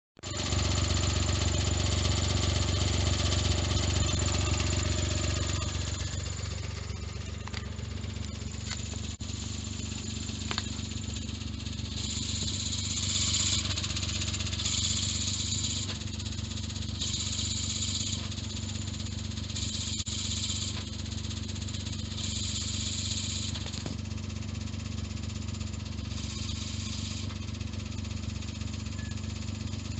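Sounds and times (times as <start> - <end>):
car engine running: 0.2 - 29.9
clutch rattling grind: 0.2 - 29.9
high hissing scrape: 8.5 - 16.0, 22.2 - 23.7, 26.1 - 27.3.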